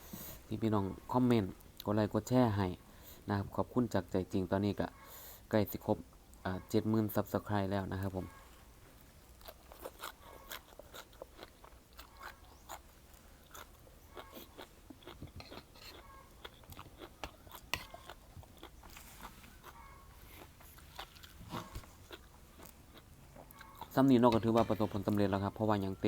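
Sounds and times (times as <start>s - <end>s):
person chewing crunchy food: 9.2s - 25.4s.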